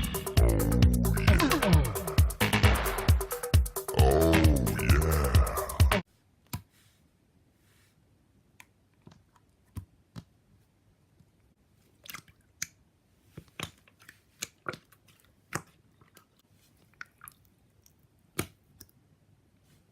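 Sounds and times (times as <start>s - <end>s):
slime squished with wet clicks: 12.0s - 12.8s.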